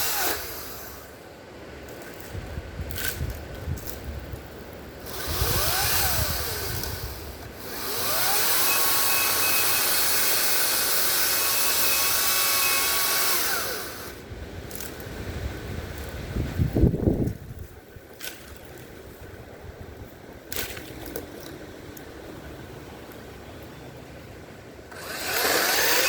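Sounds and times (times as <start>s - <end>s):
electric chainsaw motor revving: 0.0s - 1.1s, 5.0s - 14.2s, 24.9s - 26.0s.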